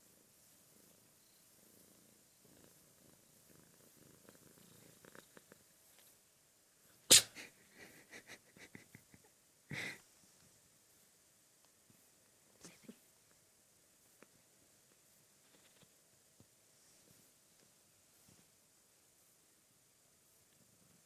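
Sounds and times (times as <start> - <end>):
cat purring: 0.0 - 21.0
cat sneezing: 7.0 - 7.6.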